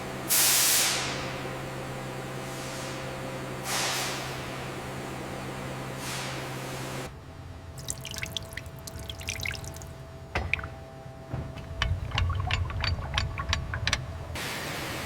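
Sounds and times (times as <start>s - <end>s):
liquid dripping: 7.8s - 10.8s, 11.6s - 14.2s.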